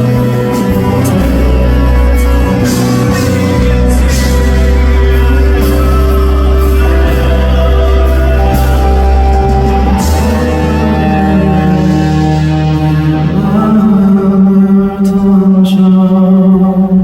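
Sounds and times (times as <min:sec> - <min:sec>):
live band playing held chords: 0:00.0 - 0:17.0.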